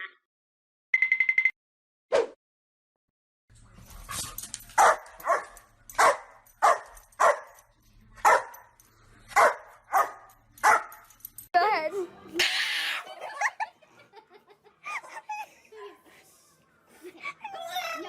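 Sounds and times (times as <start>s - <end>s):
dog barking: 4.8s - 7.6s, 8.2s - 8.7s, 9.3s - 11.0s.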